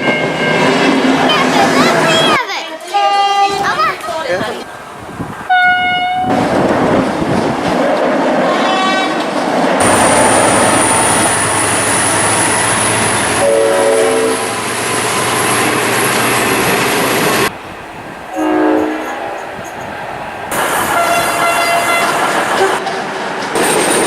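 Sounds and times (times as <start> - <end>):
train passing with whine: 0.0 - 3.7, 4.6 - 24.0
train horn blasts: 5.5 - 6.4, 8.4 - 9.3, 13.4 - 14.5, 18.3 - 19.4, 20.9 - 22.8.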